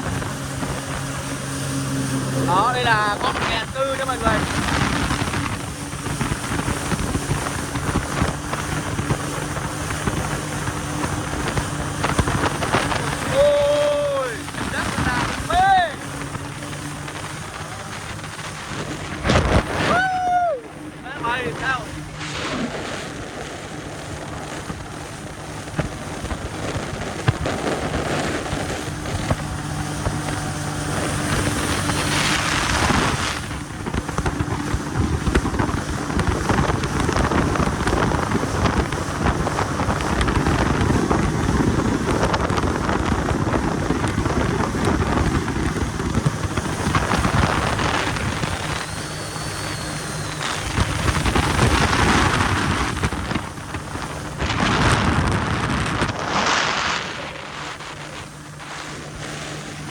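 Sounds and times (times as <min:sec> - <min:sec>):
jet ski engine hum: 0:00.0 - 0:59.9
wind buffeting microphone: 0:00.0 - 0:59.9
water spray noise: 0:20.7 - 0:38.2, 0:45.4 - 0:59.9.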